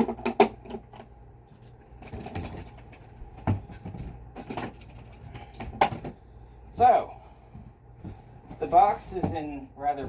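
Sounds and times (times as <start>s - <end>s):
soft rustle: 6.6s - 10.0s.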